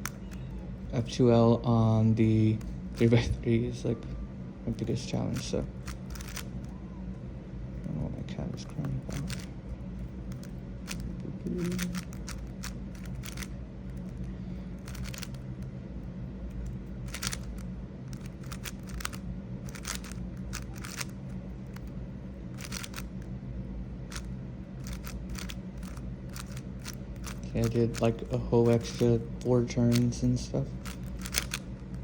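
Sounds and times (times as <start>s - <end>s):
speed cube clicking turns: 0.0s - 0.4s, 2.6s - 3.3s, 4.9s - 6.5s, 8.7s - 9.5s, 10.3s - 15.4s, 16.6s - 21.9s, 22.6s - 23.2s, 24.1s - 30.2s, 30.8s - 32.0s
steady low hum: 0.0s - 32.0s.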